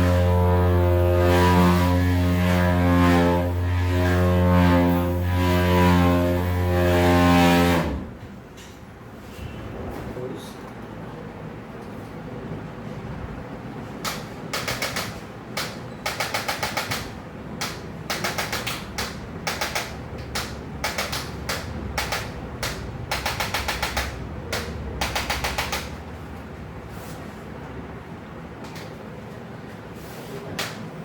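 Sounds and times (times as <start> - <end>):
rapid sharp taps: 14.0 - 26.0.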